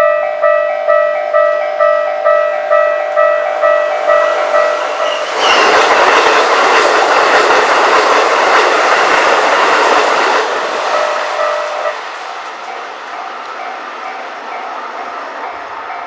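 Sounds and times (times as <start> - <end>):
level crossing bell: 0.0 - 4.8
train passing at speed: 0.0 - 16.0.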